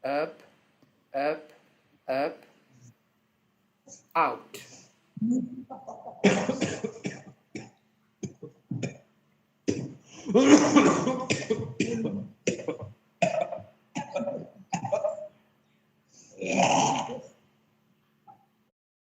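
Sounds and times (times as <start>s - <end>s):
man retching: 5.6s - 9.0s, 9.7s - 15.3s, 16.4s - 17.3s
man coughing: 5.8s - 9.0s, 9.7s - 15.3s.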